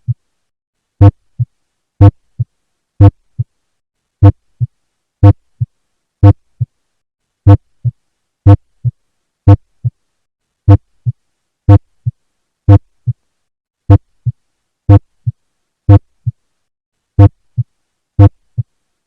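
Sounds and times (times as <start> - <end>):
heartbeat through stethoscope: 4.2 - 6.7, 7.5 - 10.0, 17.2 - 18.7.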